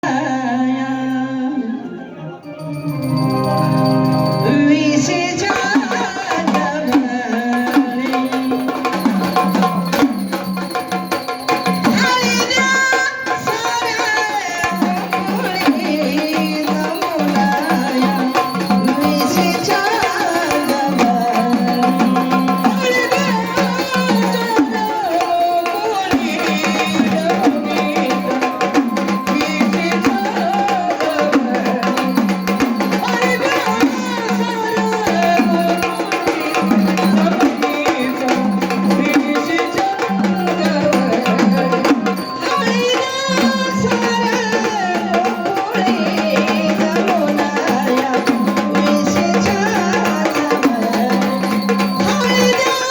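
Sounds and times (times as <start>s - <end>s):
keyboard melody: 2.1s - 5.4s
electronic keyboard chords: 2.8s - 4.7s
drums with fast dense beat: 5.4s - 52.9s.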